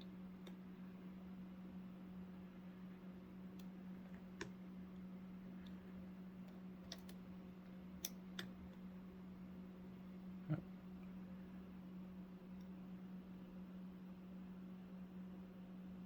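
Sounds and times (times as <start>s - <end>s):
low steady hum: 0.0s - 16.0s.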